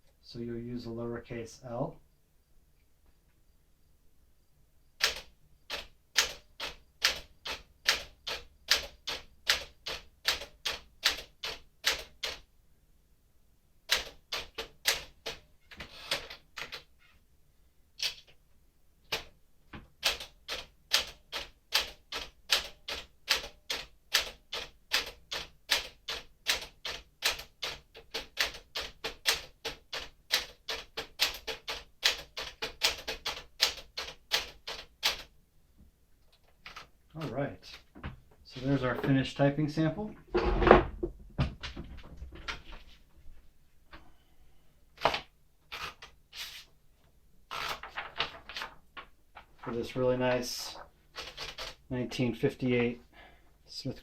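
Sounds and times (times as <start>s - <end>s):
manual typewriter key strikes: 5.0s - 12.4s, 51.2s - 51.8s.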